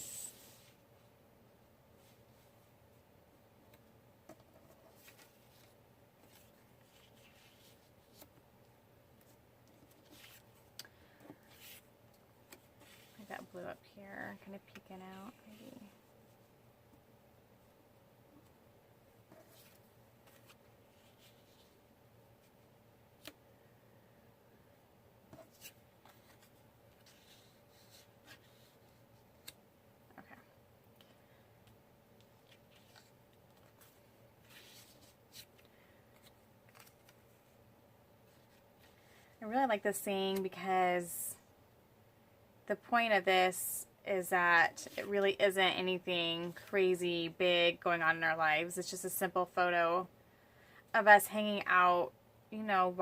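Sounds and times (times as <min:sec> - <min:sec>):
low room hum: 0:00.0 - 0:53.0.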